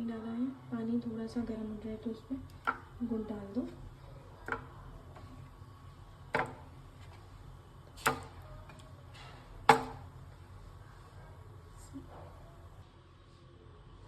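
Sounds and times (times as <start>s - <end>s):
knocks on metal cooking pan: 6.3s - 6.7s, 8.0s - 8.4s, 9.6s - 10.1s.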